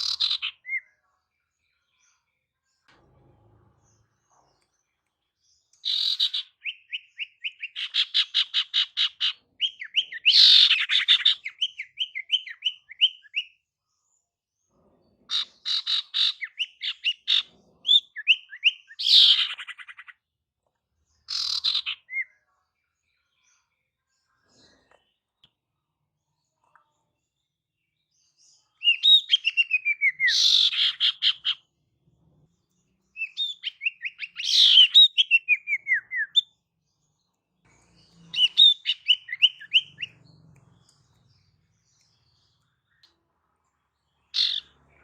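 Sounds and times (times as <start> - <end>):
bird chirping and trilling: 0.0 - 1.0, 5.7 - 13.6, 15.3 - 20.2, 21.3 - 22.5, 28.4 - 31.7, 32.9 - 36.7, 37.6 - 43.1, 44.1 - 45.0.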